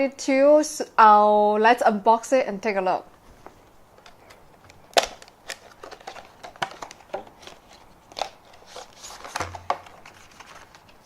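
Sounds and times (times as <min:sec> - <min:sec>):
packaging crinkling: 0:04.0 - 0:11.0.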